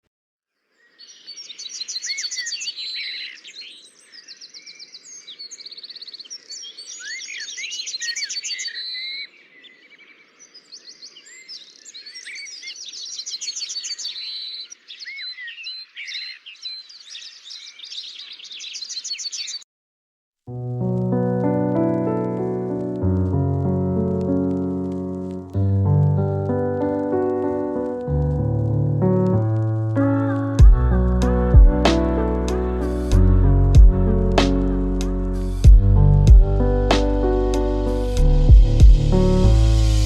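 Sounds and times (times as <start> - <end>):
songbirds singing: 0.7 - 19.6.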